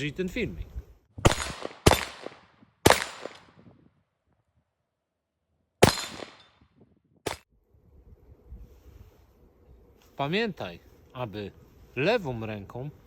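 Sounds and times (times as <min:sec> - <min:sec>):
rifle gunshots with echo: 0:01.2 - 0:03.6, 0:05.8 - 0:06.5.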